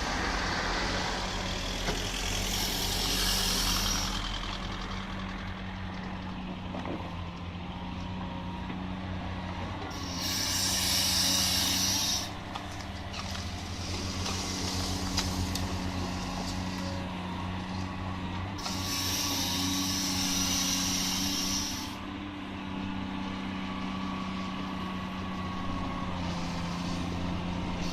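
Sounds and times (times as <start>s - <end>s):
excavator diesel engine running: 0.0s - 27.9s
air brakes hissing: 2.0s - 4.5s, 9.9s - 12.4s, 18.6s - 22.0s.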